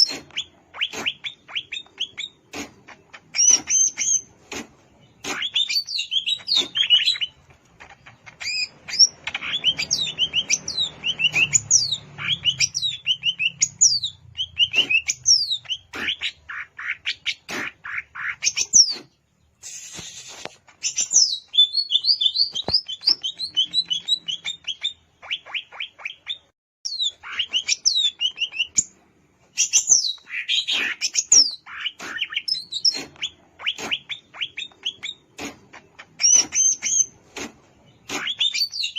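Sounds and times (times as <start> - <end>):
bird chirping and whistling: 0.0 - 2.4, 3.1 - 4.3, 5.2 - 7.4, 8.2 - 17.4, 18.2 - 28.9, 29.5 - 35.3, 35.9 - 37.2, 38.0 - 38.9.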